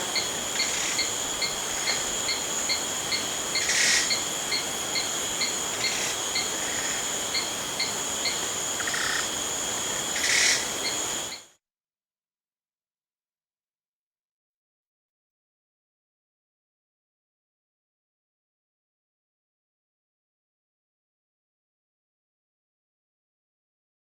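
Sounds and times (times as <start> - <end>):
high-pitched insect drone: 0.0 - 11.4
brief louder insect calls: 0.0 - 11.5
cricket chirping: 0.0 - 11.5.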